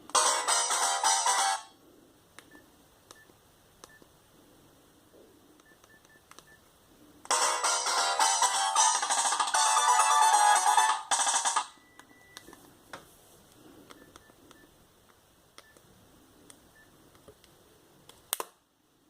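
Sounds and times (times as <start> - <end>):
polyphonic phone ringtone: 0.1 - 1.8, 7.3 - 11.9.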